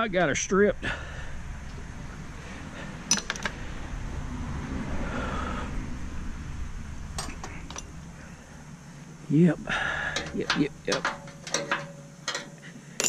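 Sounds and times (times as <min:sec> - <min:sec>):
low steady rumble: 0:00.0 - 0:13.0
metal parts clinking: 0:03.1 - 0:03.6, 0:07.2 - 0:08.0, 0:10.1 - 0:13.0.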